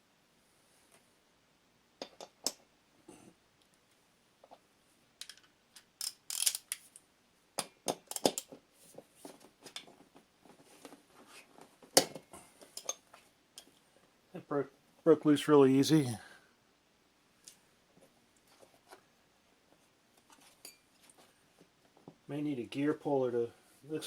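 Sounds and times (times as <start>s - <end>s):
hand wrench clicking on metal: 6.0s - 6.8s.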